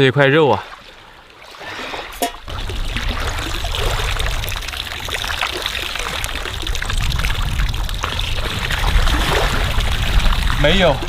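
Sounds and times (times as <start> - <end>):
water splashing and trickling: 0.1 - 11.0.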